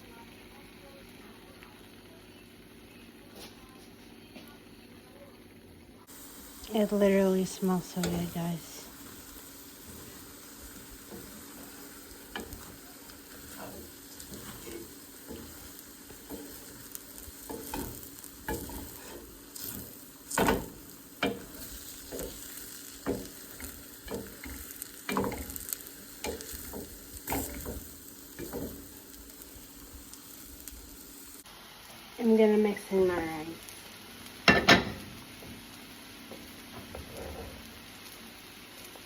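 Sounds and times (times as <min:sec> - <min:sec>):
food sizzling in frying pan: 0:00.0 - 0:39.0
utensil scraping pan: 0:07.9 - 0:28.9.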